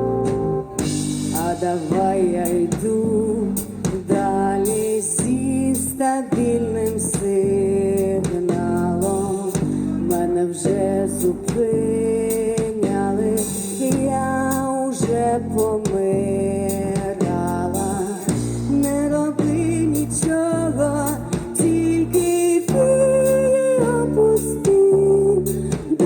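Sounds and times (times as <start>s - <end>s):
rock band playing: 0.0s - 3.0s
person singing: 0.0s - 26.0s.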